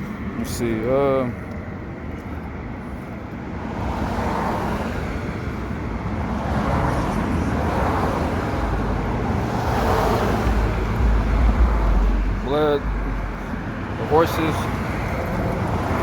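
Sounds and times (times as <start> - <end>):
cars passing: 0.0 - 16.0
low rumble: 9.5 - 15.6.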